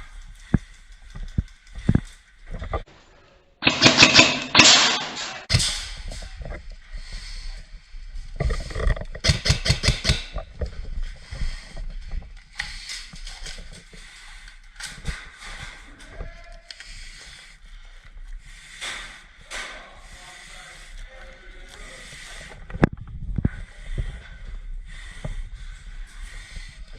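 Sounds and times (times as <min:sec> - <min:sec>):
airsoft guns firing: 0:03.6 - 0:05.0.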